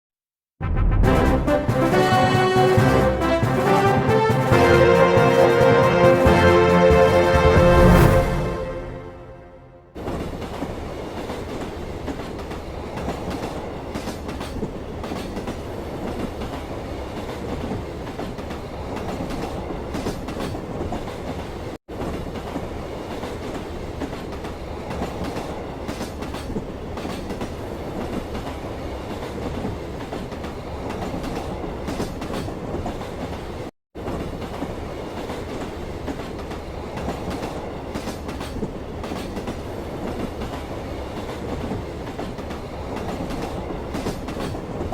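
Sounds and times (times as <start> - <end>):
train rumbling on rails: 0.6 - 44.9
wheels clacking over rail joints: 10.0 - 44.9.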